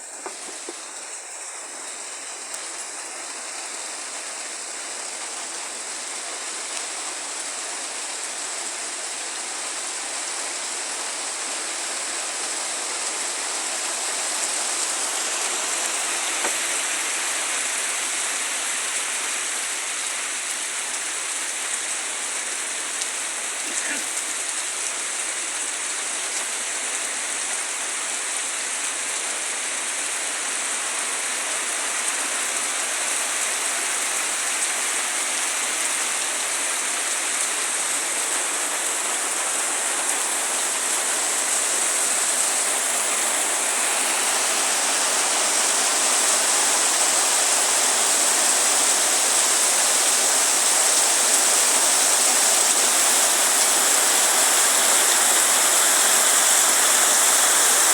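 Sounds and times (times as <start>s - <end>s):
heavy rain: 0.0s - 57.9s.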